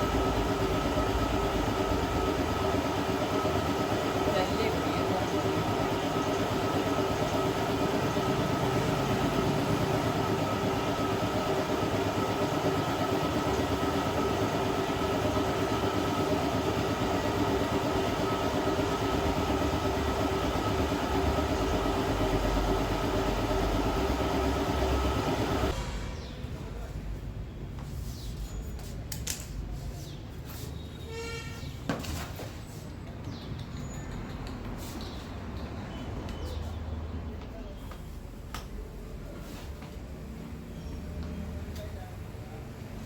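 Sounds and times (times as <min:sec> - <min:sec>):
electric tool motor whining: 0:00.0 - 0:25.8.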